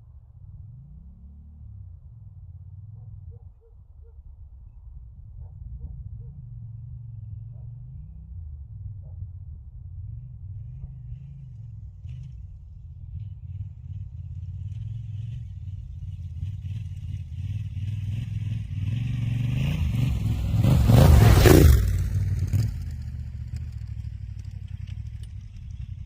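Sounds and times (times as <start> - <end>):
motorcycle engine revving: 9.9 - 26.0.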